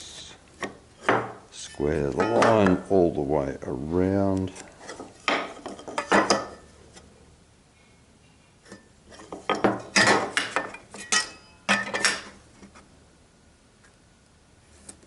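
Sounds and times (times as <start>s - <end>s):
tools knocking on a workbench: 1.1s - 1.4s, 9.3s - 10.8s.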